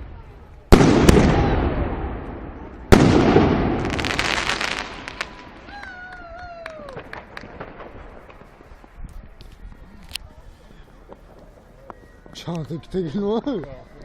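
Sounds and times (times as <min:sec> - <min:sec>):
firework crackle: 0:00.0 - 0:09.7
firework boom: 0:00.7 - 0:05.6.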